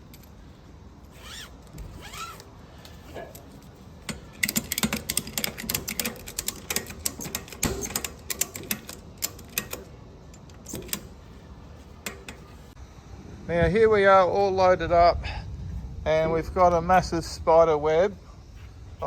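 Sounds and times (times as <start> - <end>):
ratchet strap clicking: 1.1 - 2.5, 4.1 - 11.2.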